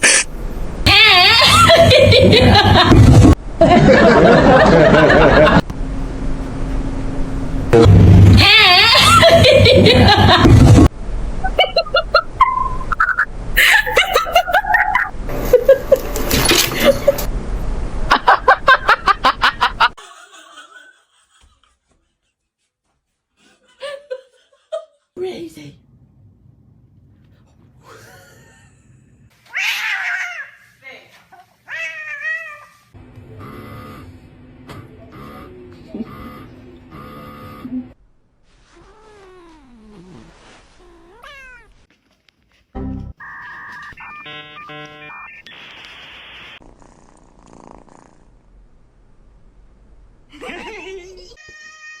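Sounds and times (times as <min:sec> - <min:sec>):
person laughing: 0:08.4 - 0:10.8, 0:11.4 - 0:17.3, 0:18.1 - 0:21.7, 0:43.2 - 0:45.2, 0:50.3 - 0:51.4
cat meowing and yowling: 0:29.5 - 0:30.6, 0:31.7 - 0:32.7, 0:40.8 - 0:41.8, 0:51.4 - 0:52.0.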